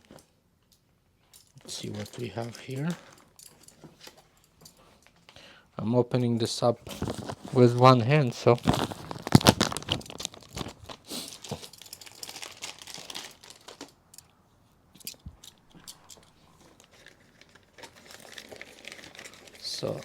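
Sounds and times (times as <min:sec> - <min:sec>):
packaging crinkling and tearing: 0:06.8 - 0:14.0, 0:15.7 - 0:20.0.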